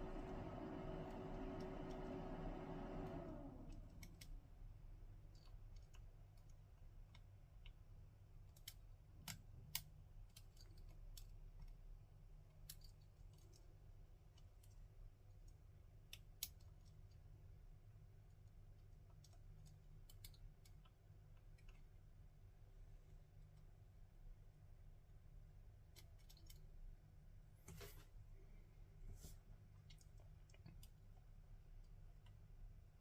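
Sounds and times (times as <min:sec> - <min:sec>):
steady low hum: 0:00.0 - 0:09.0.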